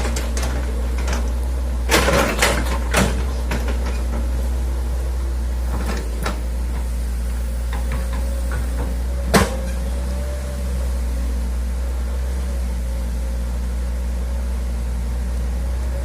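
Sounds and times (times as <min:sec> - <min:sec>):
excavator bucket knocks and scrapes: 0:00.0 - 0:04.4, 0:07.7 - 0:10.0
excavator diesel engine running: 0:00.0 - 0:16.0.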